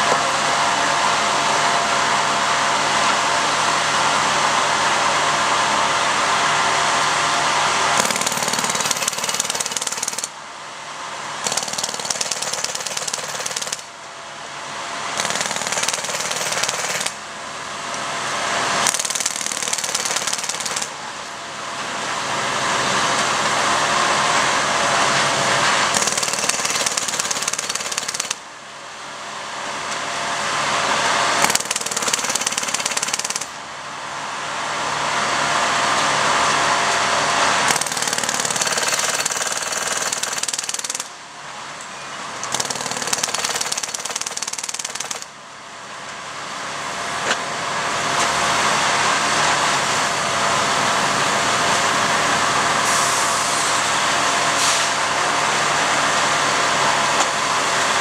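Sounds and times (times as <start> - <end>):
machine hammering on rail ties: 8.0 - 10.4, 11.4 - 14.0, 15.2 - 17.2, 18.8 - 21.0, 25.9 - 28.4, 31.4 - 33.6, 37.6 - 41.2, 42.4 - 45.4.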